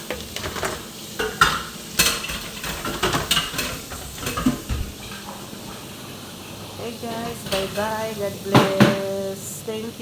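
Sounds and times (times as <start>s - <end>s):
utensil stirring food in a pot: 0.0s - 9.4s.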